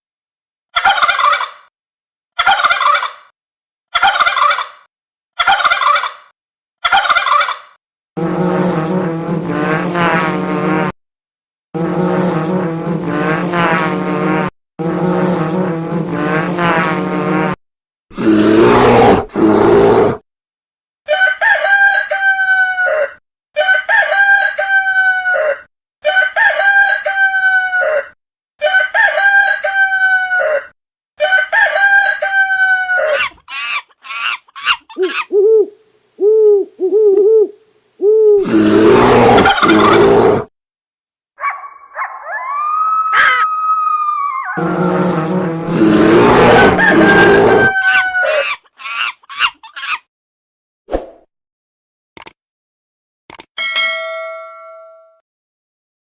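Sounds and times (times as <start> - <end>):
chickens clucking: 0.8 - 1.6, 2.4 - 3.3, 5.4 - 6.2, 6.8 - 7.7
rooster crowing: 21.1 - 33.3, 41.4 - 44.8, 46.2 - 48.5.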